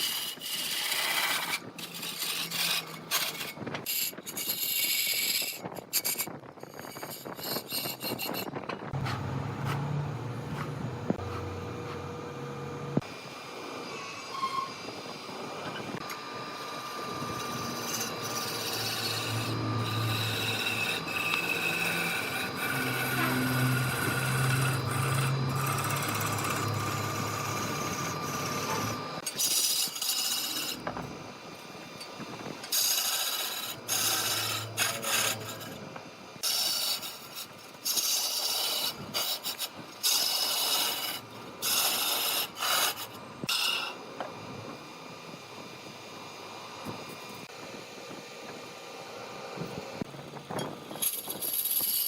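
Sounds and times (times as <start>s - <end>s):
low motor hum: 8.8s - 13.5s, 15.2s - 29.2s
lathe tool cutting spinning wood: 15.2s - 31.1s, 32.7s - 44.0s.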